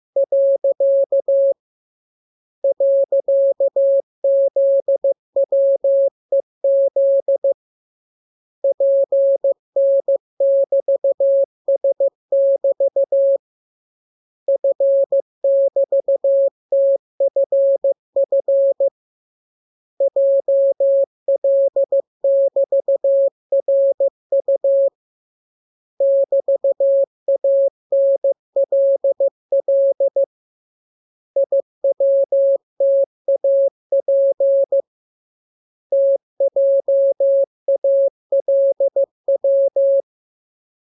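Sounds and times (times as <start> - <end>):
morse code beeps: 0.2 - 1.6, 2.6 - 7.6, 8.6 - 13.4, 14.5 - 18.9, 20.0 - 24.9, 26.0 - 30.3, 31.4 - 34.9, 35.9 - 40.1.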